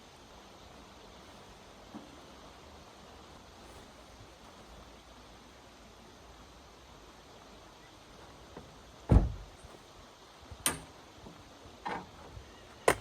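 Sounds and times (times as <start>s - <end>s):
faint steady hiss: 0.0s - 13.0s
knocks and clunks: 8.5s - 9.5s
heavy low thump: 9.1s - 9.5s.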